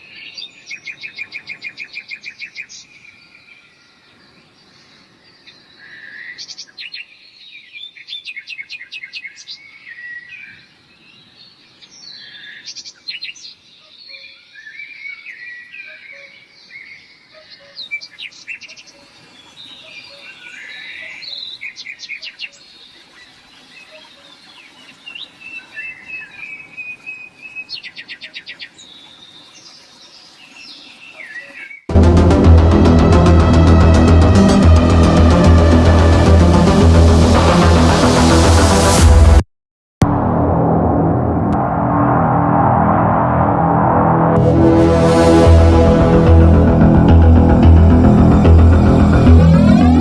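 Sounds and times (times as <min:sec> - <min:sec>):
songbirds chirping and trilling: 0:00.0 - 0:31.9.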